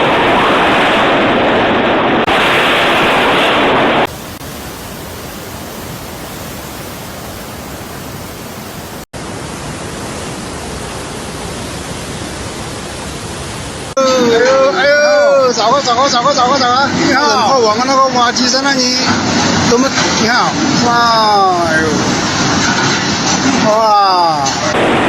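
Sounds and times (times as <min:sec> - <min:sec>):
rushing water: 0:02.3 - 0:14.0.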